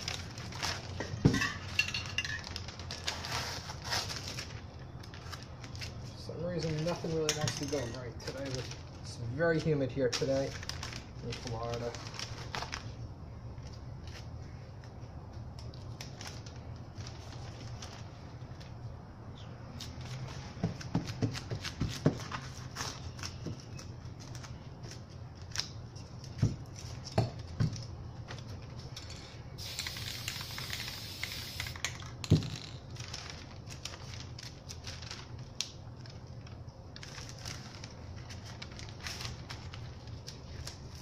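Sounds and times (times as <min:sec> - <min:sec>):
spray paint can hissing: 0:29.6 - 0:31.8.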